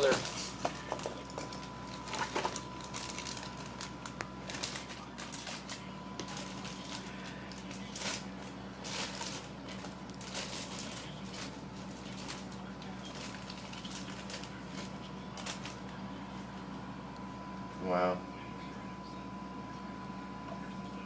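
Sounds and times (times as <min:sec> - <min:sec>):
packaging clicks and rustles: 0:00.0 - 0:15.9
steady low hum: 0:00.0 - 0:21.0.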